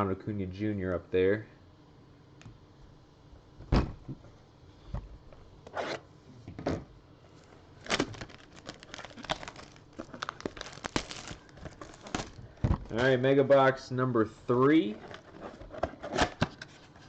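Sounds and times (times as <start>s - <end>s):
plastic wrap crinkling and tearing: 7.8s - 13.1s.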